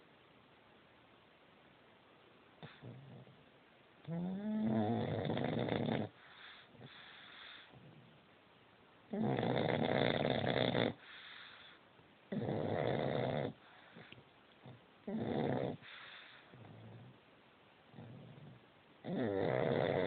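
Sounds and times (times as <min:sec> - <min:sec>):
quiet breaths: 0:00.0 - 0:20.0
dog snoring loudly: 0:02.6 - 0:03.4, 0:04.1 - 0:08.1, 0:09.1 - 0:17.2, 0:17.9 - 0:20.0.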